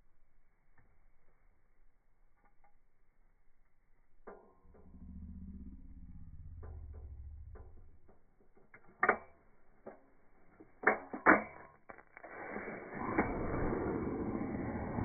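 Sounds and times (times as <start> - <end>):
low hum: 0.0 - 15.0
sharp clicks and knocks of gear: 6.6 - 12.5.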